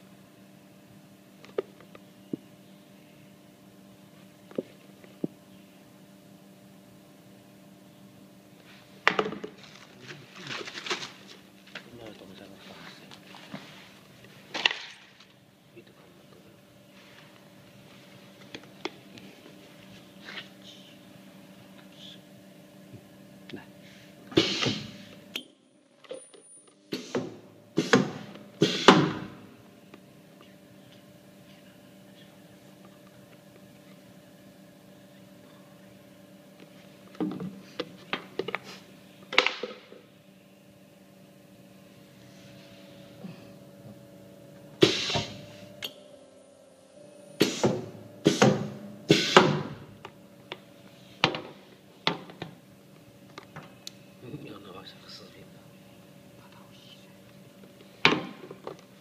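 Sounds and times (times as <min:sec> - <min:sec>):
steady machine hum: 0:00.0 - 0:59.0
thin high machine whine: 0:39.8 - 0:51.8.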